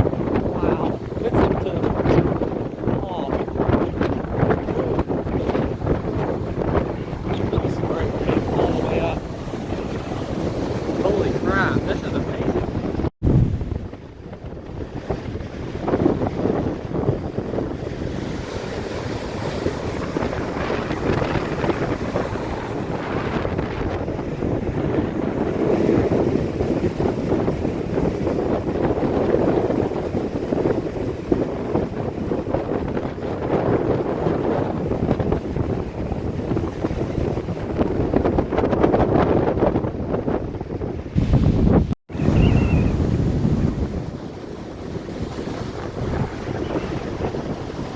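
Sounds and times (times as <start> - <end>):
heavy surf breaking: 0.0 - 47.9
wind buffeting microphone: 0.0 - 47.9.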